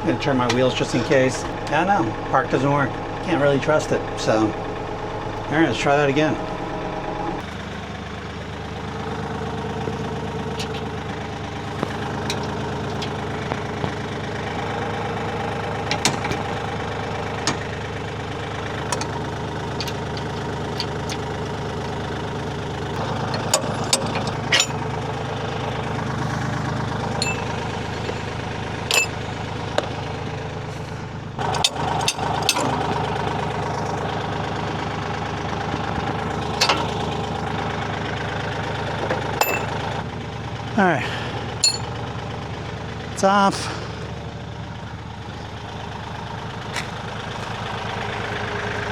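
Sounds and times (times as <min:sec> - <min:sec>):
tractor diesel engine running: 0:00.0 - 0:48.9
sharp clicks and knocks: 0:10.5 - 0:10.9, 0:11.6 - 0:14.0, 0:15.9 - 0:16.6, 0:17.4 - 0:17.7, 0:18.7 - 0:21.6, 0:23.0 - 0:24.8, 0:27.2 - 0:28.2, 0:31.4 - 0:33.1, 0:36.4 - 0:37.1.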